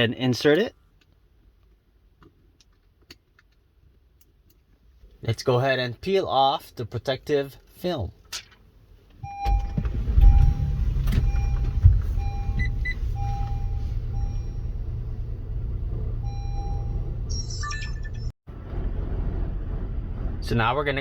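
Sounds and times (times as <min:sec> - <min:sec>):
car engine starting and idling: 0:09.1 - 0:21.0
electronic beeps: 0:16.3 - 0:18.3
engine knocks: 0:18.5 - 0:21.0.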